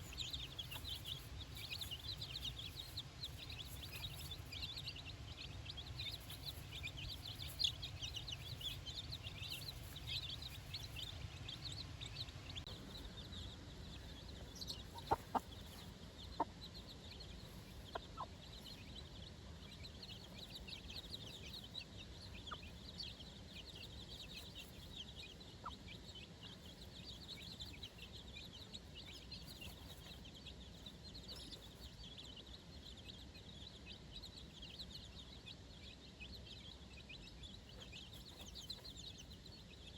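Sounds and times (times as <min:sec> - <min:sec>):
chicks peeping: 0:00.0 - 0:39.9
hen clucking: 0:14.0 - 0:30.3.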